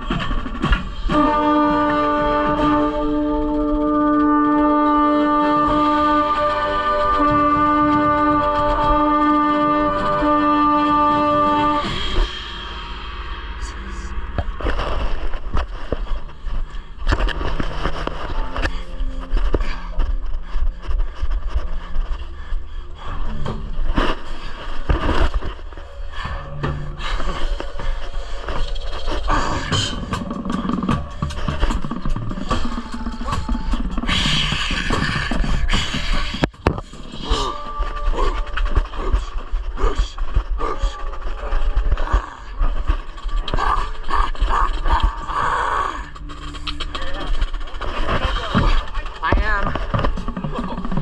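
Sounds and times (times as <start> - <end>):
brass playing chords: 1.1 - 14.9
low rumble of movement: 1.8 - 51.0
hard breathing: 13.2 - 49.0.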